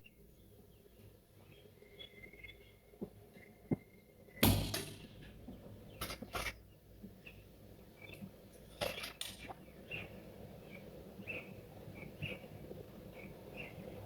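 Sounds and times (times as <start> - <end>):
faint bird chirps: 0.0 - 4.3, 8.9 - 14.0
air rifle shot crack: 4.4 - 5.5.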